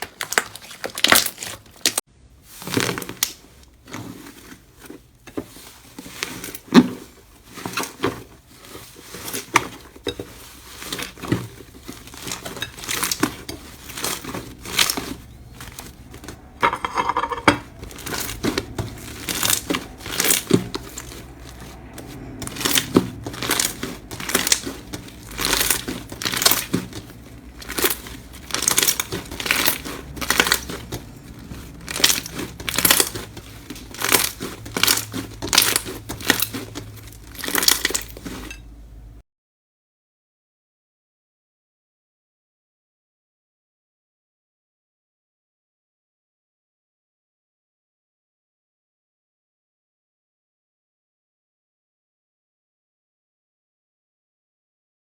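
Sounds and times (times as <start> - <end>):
slime crackling and popping: 0.0 - 2.0, 2.7 - 3.5, 12.1 - 15.8, 17.8 - 38.6.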